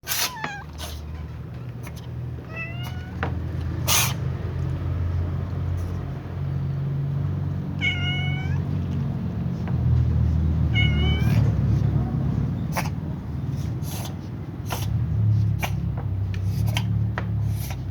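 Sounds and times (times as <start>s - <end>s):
cats meowing: 0.0s - 1.4s, 2.2s - 4.7s, 7.6s - 9.2s, 10.5s - 13.0s.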